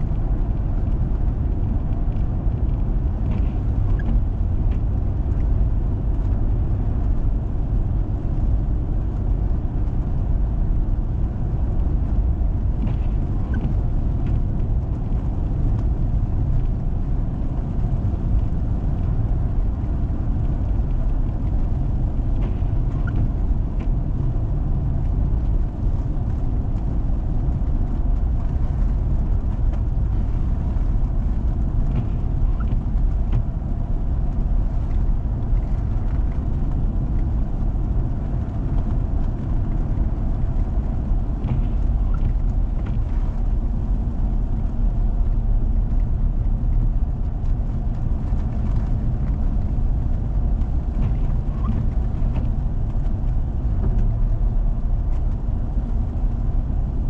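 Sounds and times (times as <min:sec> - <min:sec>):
low rumble of engine and tyres: 0:00.0 - 0:57.0.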